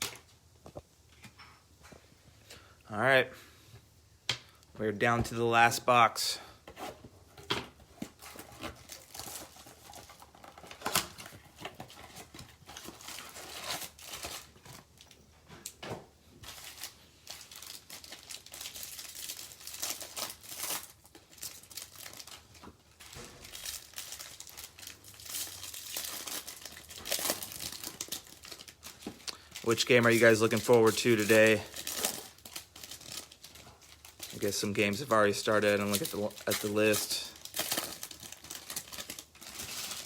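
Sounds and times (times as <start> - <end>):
plastic wrapping crinkling and tearing: 7.7 - 15.8, 16.4 - 40.0
wrapper snapping: 35.6 - 40.0.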